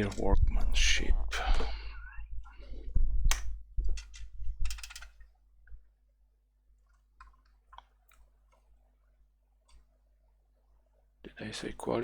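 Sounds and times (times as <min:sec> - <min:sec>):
sharp clicks and rustle: 0:03.3 - 0:05.3.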